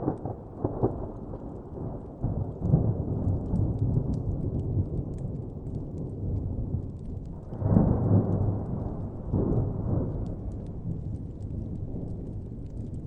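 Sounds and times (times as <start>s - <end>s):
faint fire crackle: 0.0s - 13.0s
thunder rumbling: 0.0s - 13.0s.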